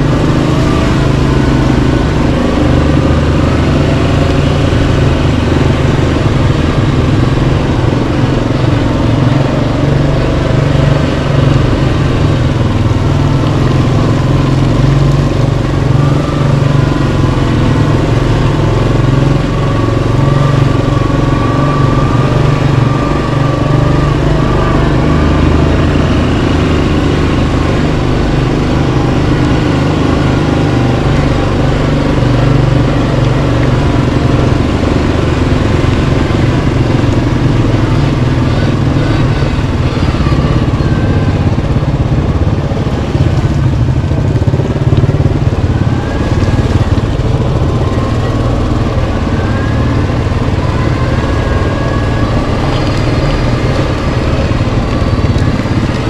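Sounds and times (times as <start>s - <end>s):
engine running: 0.0s - 56.0s
thin whine gliding in pitch: 45.5s - 56.0s.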